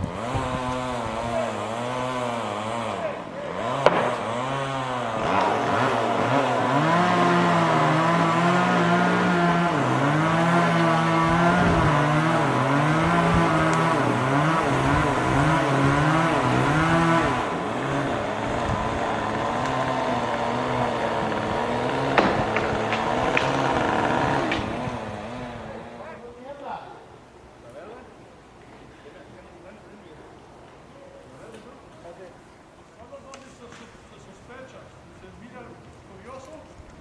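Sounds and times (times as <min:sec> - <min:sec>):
chainsaw engine cutting: 0:00.0 - 0:26.3.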